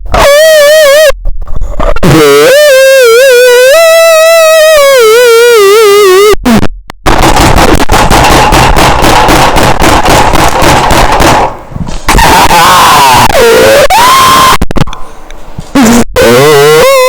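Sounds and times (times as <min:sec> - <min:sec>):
man making warbling wail: 0:00.1 - 0:01.2, 0:01.9 - 0:06.4, 0:12.1 - 0:14.8, 0:15.9 - 0:17.0
harsh distorted noise blast: 0:06.5 - 0:14.9.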